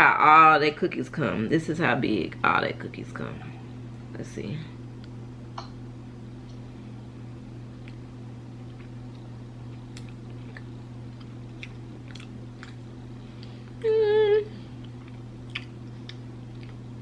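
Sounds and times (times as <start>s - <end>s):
steady low hum: 0.0s - 17.0s
person chewing cookie: 7.7s - 13.8s, 14.7s - 17.0s.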